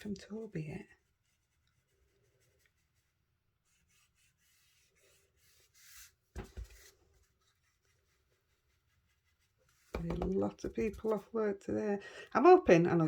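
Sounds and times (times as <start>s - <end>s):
scratchy rubbing on card: 1.2s - 10.5s.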